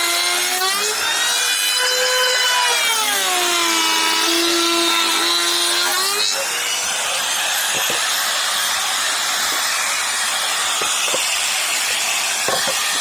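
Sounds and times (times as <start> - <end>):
power tool motor whine: 0.0 - 13.0
tool rasping into wood: 4.2 - 13.0.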